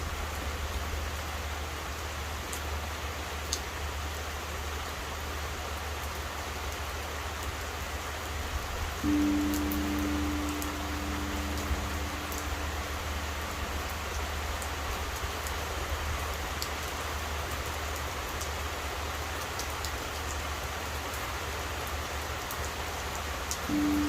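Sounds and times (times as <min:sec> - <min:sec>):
steady rain: 0:00.0 - 0:24.0
temple bell humming: 0:09.0 - 0:14.6, 0:23.7 - 0:24.0
water dripping: 0:09.0 - 0:15.7, 0:23.5 - 0:24.0.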